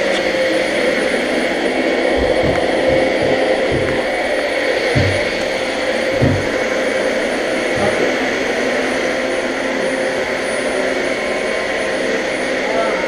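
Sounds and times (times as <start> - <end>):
vacuum cleaner running: 0.0 - 13.0
low knocks of vacuum moved: 2.2 - 6.8.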